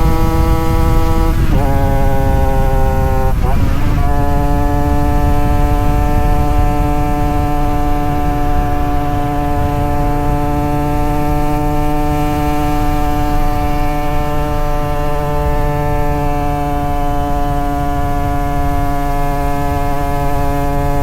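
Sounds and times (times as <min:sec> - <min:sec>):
two-stroke motorcycle engine: 0:00.0 - 0:21.0.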